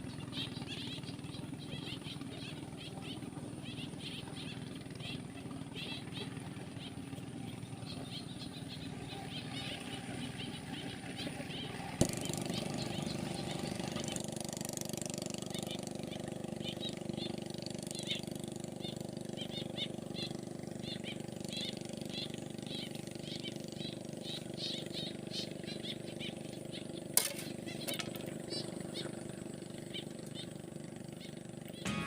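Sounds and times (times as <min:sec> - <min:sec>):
motor humming: 0:15.5 - 0:32.0.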